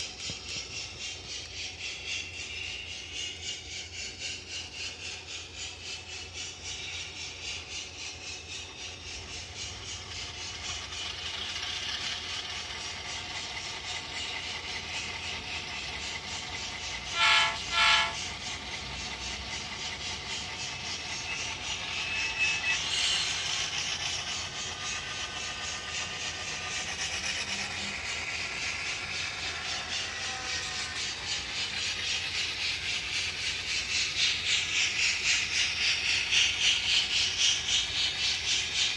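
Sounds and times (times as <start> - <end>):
model locomotive rumble from speaker: 0.0 - 38.9
model train running on track: 0.0 - 38.9
short horn blasts: 17.2 - 18.2.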